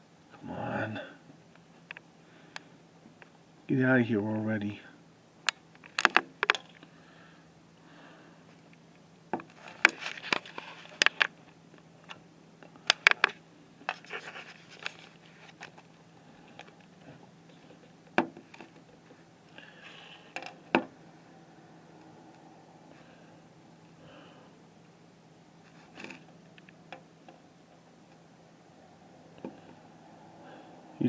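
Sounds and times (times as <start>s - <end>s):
faint steady hum: 0.0s - 31.0s
microphone handling clicks and scrapes: 9.4s - 11.4s.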